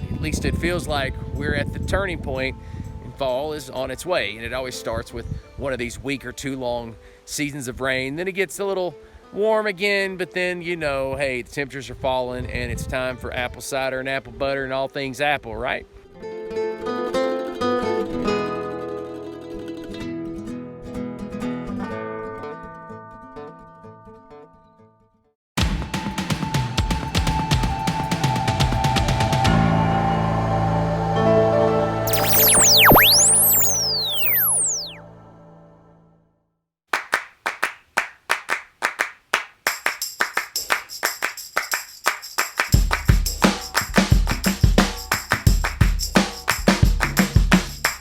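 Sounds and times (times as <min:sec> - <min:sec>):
acoustic guitar music: 0:16.1 - 0:24.9
high shimmer: 0:32.1 - 0:35.0
handclap beat: 0:36.9 - 0:48.0.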